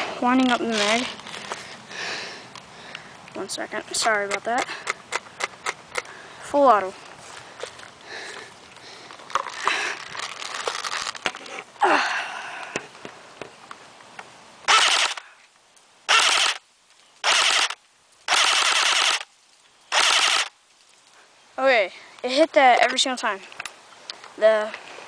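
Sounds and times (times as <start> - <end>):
rustling: 0.0 - 1.9, 4.0 - 11.8
airsoft rifle bursts: 14.7 - 15.2, 16.1 - 16.6, 17.2 - 19.3, 19.9 - 20.5.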